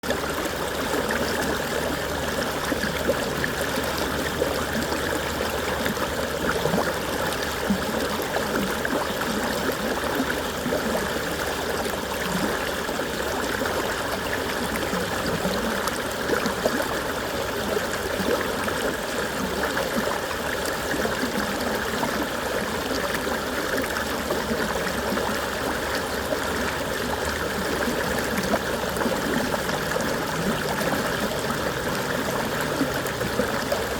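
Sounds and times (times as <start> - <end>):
stream babbling and trickling: 0.0 - 33.9.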